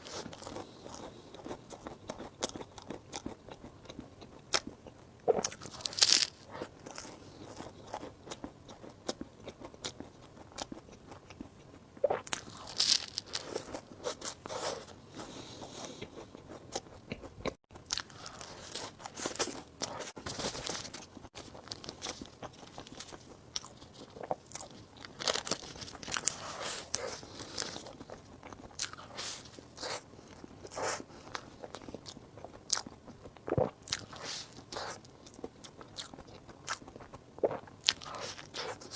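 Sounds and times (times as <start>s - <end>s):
person biting and chewing: 4.5s - 8.4s, 12.1s - 30.0s.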